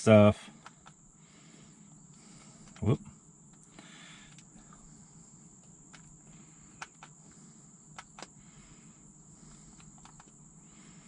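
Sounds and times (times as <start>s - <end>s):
crickets chirring: 0.0s - 11.0s
low background hum: 0.0s - 11.0s
light sharp clicks: 9.7s - 10.4s.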